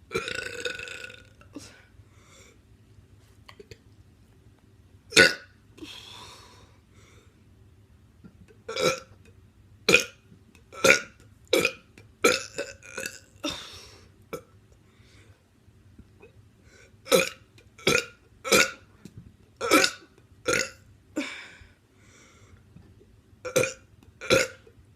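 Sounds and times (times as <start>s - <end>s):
person burping: 0.1s - 1.7s, 5.1s - 5.6s, 8.7s - 9.1s, 10.8s - 13.7s, 17.1s - 18.9s, 19.6s - 21.4s, 23.5s - 24.7s.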